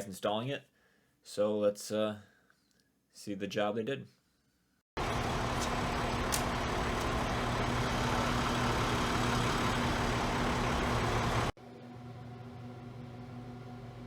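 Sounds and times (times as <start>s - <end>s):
large vehicle engine running: 5.0s - 11.6s
outdoor street noise: 5.0s - 11.6s.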